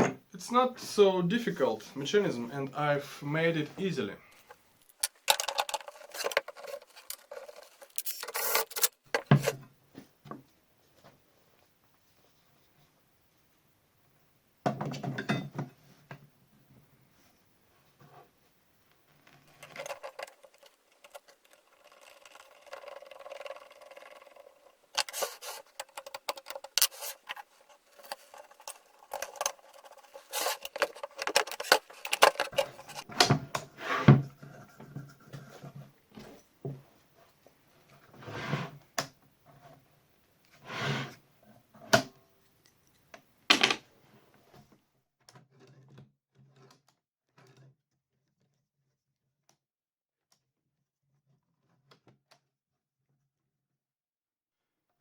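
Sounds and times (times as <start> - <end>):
wood and metal parts clicking: 4.4 - 9.5, 19.4 - 33.1.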